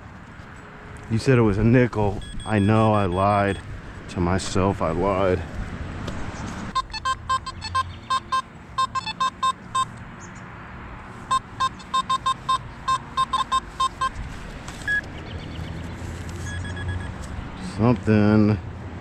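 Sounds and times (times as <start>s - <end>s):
metal detector short beeps: 2.2s - 3.6s, 6.7s - 10.0s, 11.3s - 14.2s, 14.8s - 15.1s, 16.4s - 17.2s.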